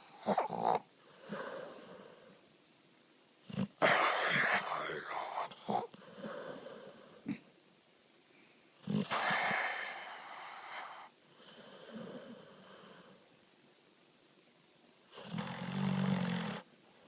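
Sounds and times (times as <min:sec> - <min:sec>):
dog snoring: 0:00.0 - 0:02.4, 0:03.4 - 0:07.4, 0:08.8 - 0:13.2, 0:15.1 - 0:16.7.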